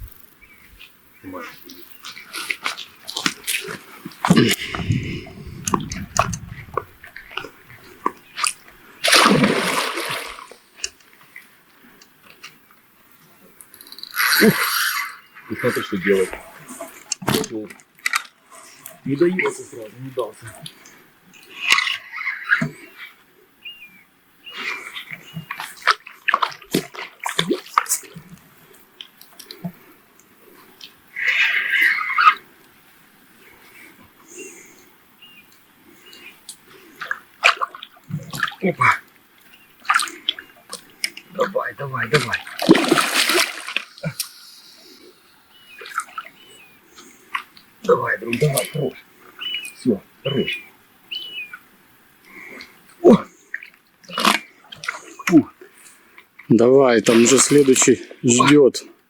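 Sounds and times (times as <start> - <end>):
short dense hissing burst: 4.5 - 7.2
fish splashing in water: 9.0 - 10.9, 42.4 - 44.3.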